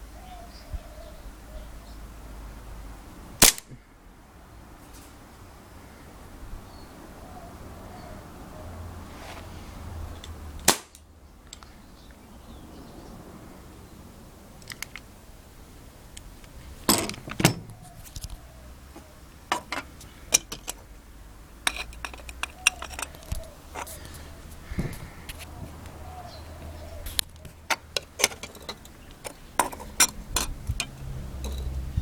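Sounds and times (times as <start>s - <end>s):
gas pistol shots cracking: 3.4s - 3.7s, 10.7s - 11.0s.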